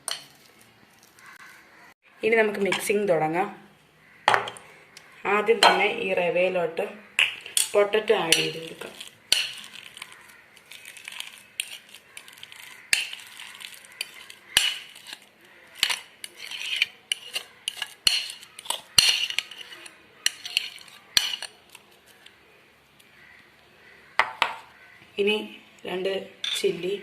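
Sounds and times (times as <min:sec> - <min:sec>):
spoon scraping food in a bowl: 0:08.3 - 0:22.3.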